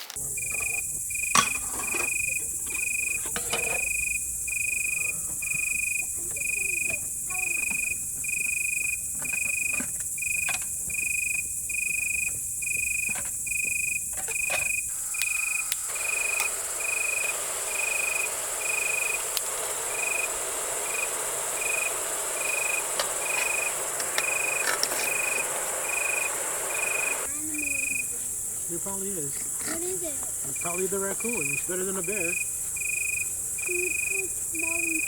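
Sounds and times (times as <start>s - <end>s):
cricket chirping: 0.0s - 35.0s
high insect trill: 0.0s - 35.0s
faint clicks: 14.2s - 27.3s.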